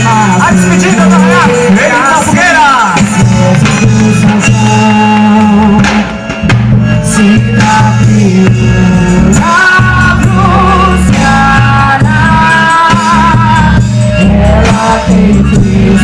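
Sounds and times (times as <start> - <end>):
bass line: 0.0 - 16.0
drums: 0.0 - 16.0
loud music with singing: 0.0 - 16.0.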